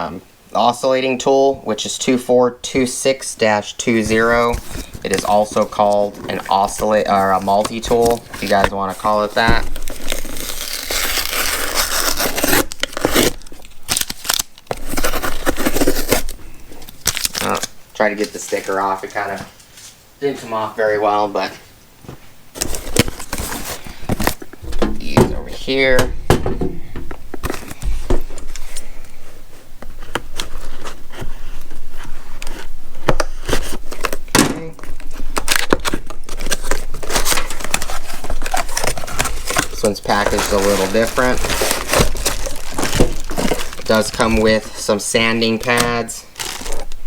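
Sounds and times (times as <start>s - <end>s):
packaging rustling and scraping: 3.8s - 20.0s, 22.2s - 47.0s
sticker seal tearing: 9.7s - 16.3s.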